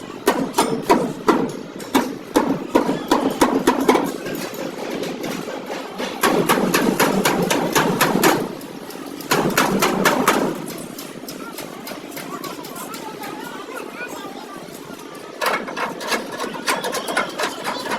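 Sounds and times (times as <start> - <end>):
hammer blows on sheet metal: 0.1 - 12.4.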